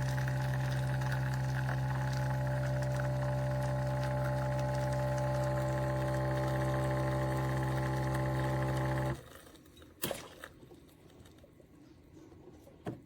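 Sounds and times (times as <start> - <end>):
espresso machine humming: 0.0 - 9.2.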